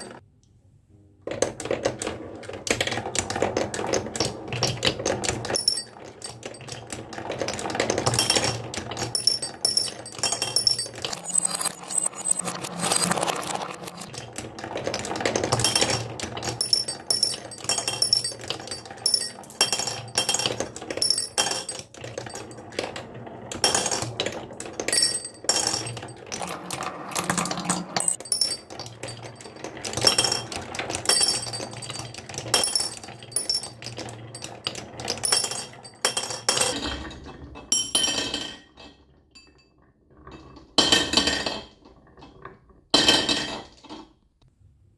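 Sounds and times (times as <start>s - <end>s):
small hard objects clinking: 9.1s - 14.1s, 24.9s - 36.8s
bright ringing tones: 9.2s - 14.1s.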